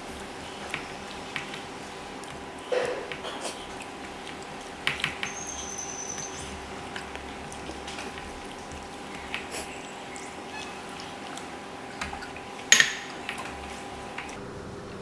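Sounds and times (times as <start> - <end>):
chewing: 0.0 - 14.4
dishes clicking and tapping: 0.2 - 14.4
thin high squeak: 5.2 - 6.7.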